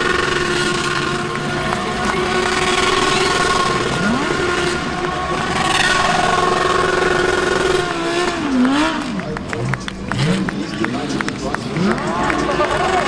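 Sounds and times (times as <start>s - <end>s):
race car engine revving: 0.0s - 13.0s
sharp exhaust cracks: 0.0s - 13.0s.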